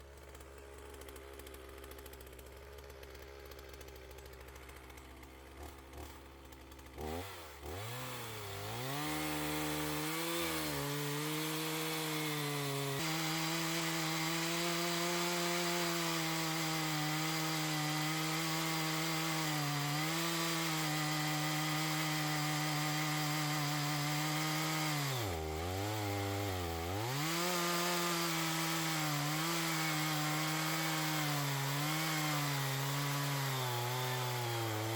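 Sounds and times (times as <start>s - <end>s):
chainsaw cutting into log: 0.0s - 34.9s
chainsaw idling and revving: 0.0s - 34.9s.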